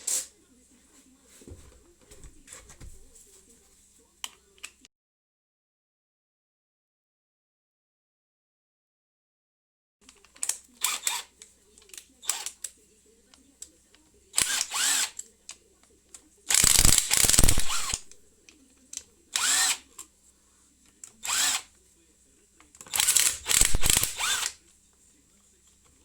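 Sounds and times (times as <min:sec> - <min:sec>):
power drill motor spinning: 0:12.2 - 0:12.6, 0:14.4 - 0:15.2, 0:16.5 - 0:18.1, 0:19.3 - 0:19.9, 0:21.2 - 0:21.7, 0:22.9 - 0:24.6.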